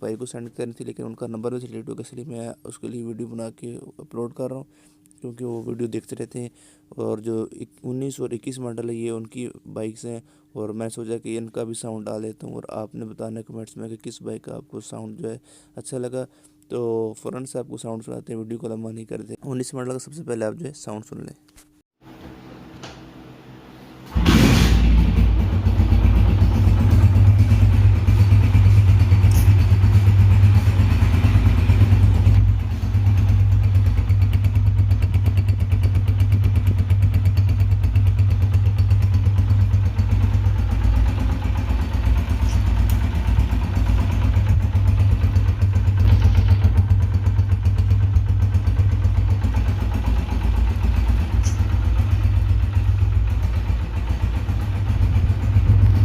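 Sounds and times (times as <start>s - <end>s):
motorcycle engine idling: 24.6s - 56.0s.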